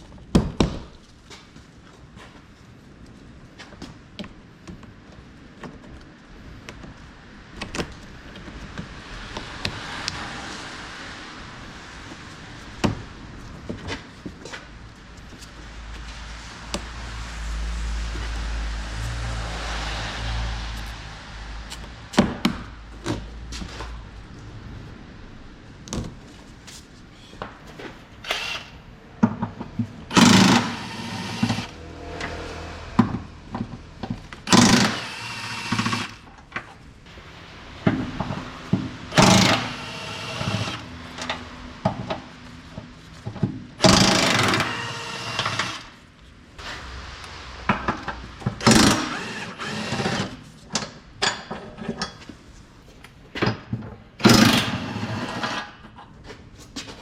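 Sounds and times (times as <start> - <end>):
power tool running: 28.2 - 28.8, 30.1 - 32.7, 34.4 - 36.2, 39.1 - 40.9, 43.8 - 45.9, 48.6 - 50.4.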